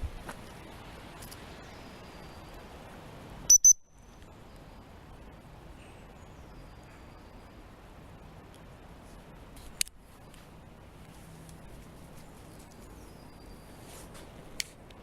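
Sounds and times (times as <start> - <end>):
high-pitched whistle blasts: 3.5 - 4.0.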